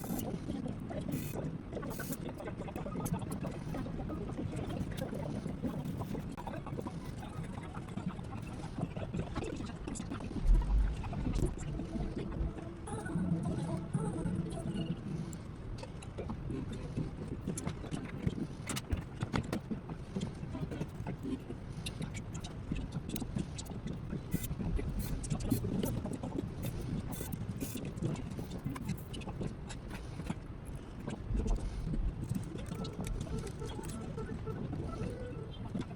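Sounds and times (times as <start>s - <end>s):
low rumble: 10.3s - 12.8s.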